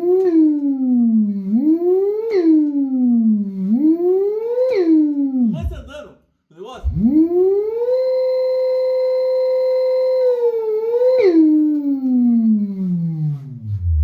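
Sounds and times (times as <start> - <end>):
electric motor whine through loudspeaker: 6.8 - 14.0.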